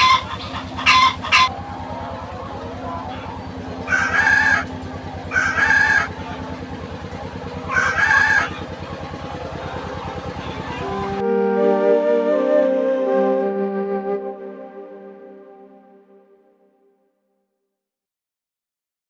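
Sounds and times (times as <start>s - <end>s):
chickens calling: 0.0s - 11.2s
low mechanical hum: 0.0s - 16.0s.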